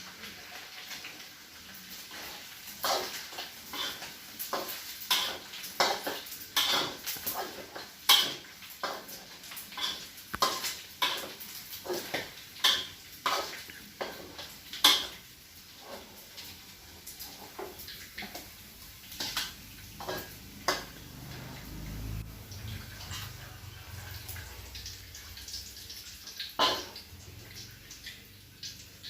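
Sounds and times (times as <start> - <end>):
metal utensils clattering on pots: 2.0 - 15.2, 19.1 - 21.8, 22.7 - 27.1.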